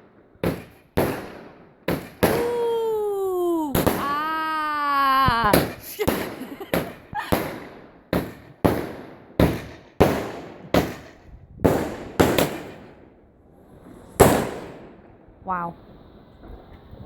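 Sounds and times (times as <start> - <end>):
sharp firework bangs: 0.0 - 2.7, 3.7 - 13.1, 13.9 - 15.2.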